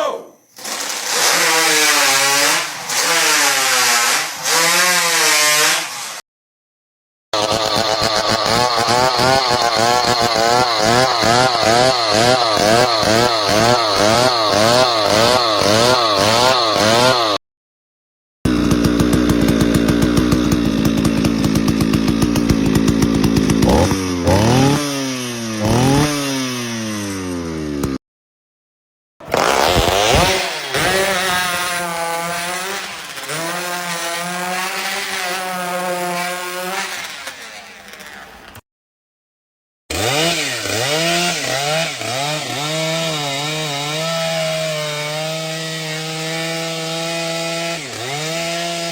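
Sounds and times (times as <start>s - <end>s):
chainsaw revving: 0.6s - 6.2s, 7.4s - 17.4s, 18.5s - 28.0s, 29.2s - 38.6s, 39.9s - 48.9s.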